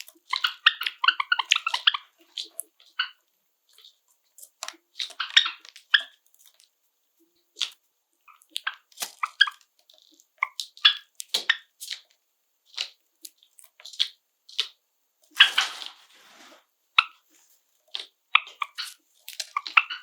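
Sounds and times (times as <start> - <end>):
sparrows chip calls: 0.2 - 4.0.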